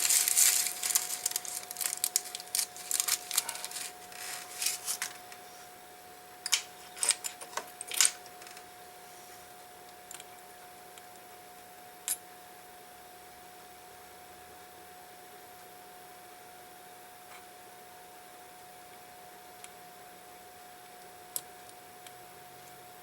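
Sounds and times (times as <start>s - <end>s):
paper rustling and crinkling: 0.0s - 5.5s.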